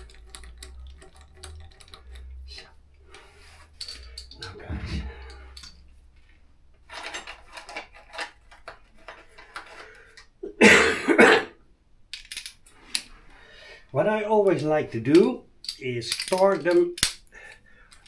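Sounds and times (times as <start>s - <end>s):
metal hand tools clinking: 0.0s - 5.9s, 6.9s - 9.8s, 15.1s - 17.3s
person coughing: 10.4s - 11.6s.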